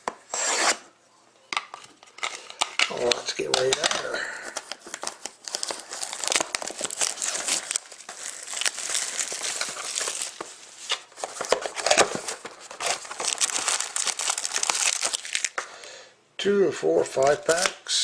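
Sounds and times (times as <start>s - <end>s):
packaging crinkling and rustling: 1.7s - 15.6s.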